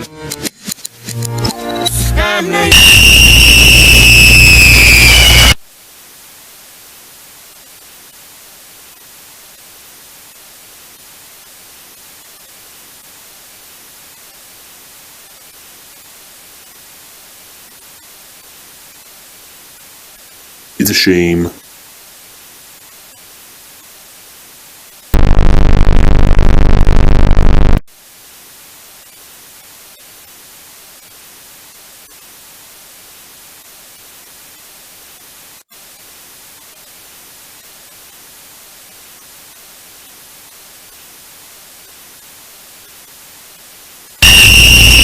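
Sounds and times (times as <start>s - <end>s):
harsh buzzing tone: 2.5s - 5.6s, 25.2s - 27.8s, 44.2s - 45.0s
static hiss: 2.6s - 45.0s.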